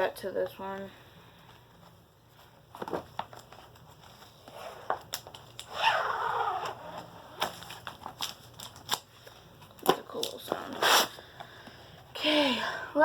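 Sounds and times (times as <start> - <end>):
notebook rustling and crinkling: 1.4 - 5.7, 6.4 - 10.6.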